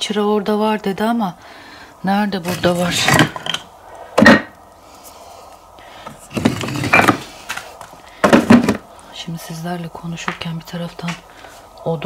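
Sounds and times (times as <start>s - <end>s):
firewood logs knocking together: 2.5s - 4.5s, 6.0s - 8.9s.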